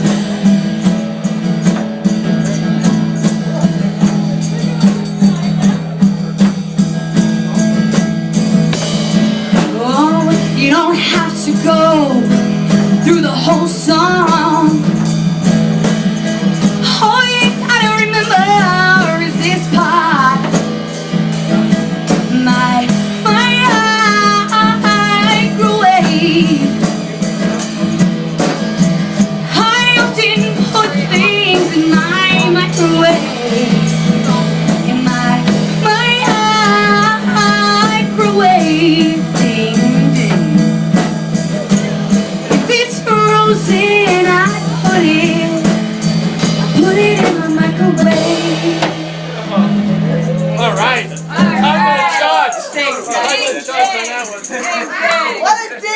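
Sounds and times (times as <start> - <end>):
instrumental accompaniment: 0.0 - 55.9
person singing a song: 22.2 - 26.9, 29.4 - 40.8, 46.6 - 49.0.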